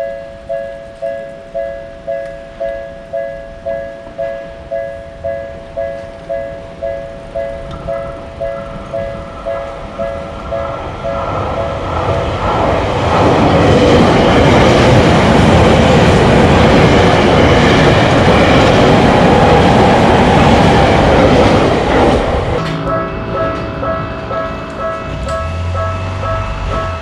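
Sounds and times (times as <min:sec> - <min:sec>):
railroad crossing bell dinging: 0:00.0 - 0:27.0
train passing: 0:00.0 - 0:27.0.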